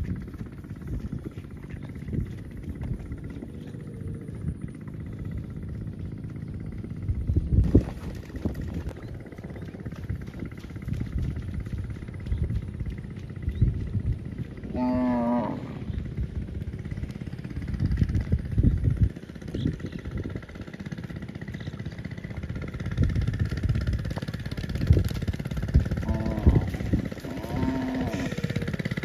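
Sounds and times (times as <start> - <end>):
wind buffeting the microphone: 0.0 - 29.0
cow mooing: 14.6 - 16.0, 26.0 - 28.9.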